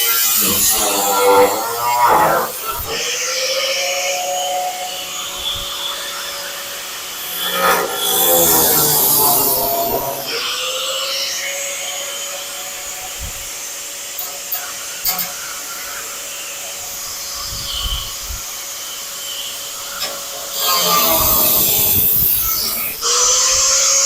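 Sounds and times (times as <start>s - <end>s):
cut-off wheel cutting metal: 0.0s - 13.1s, 19.2s - 24.0s.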